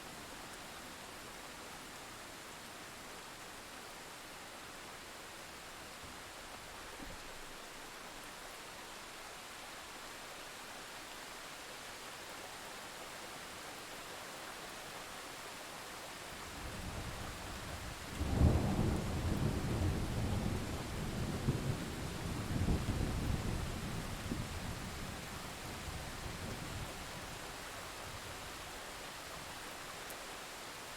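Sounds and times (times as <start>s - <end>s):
rain hiss: 0.0s - 30.9s
thunder rumbling: 18.1s - 24.5s.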